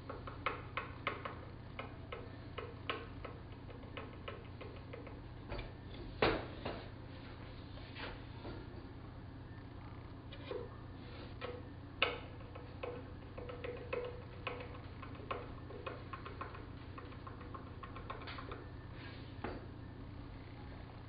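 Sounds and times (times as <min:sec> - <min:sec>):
wooden birdhouse parts tapping: 0:00.0 - 0:06.5, 0:11.4 - 0:18.8.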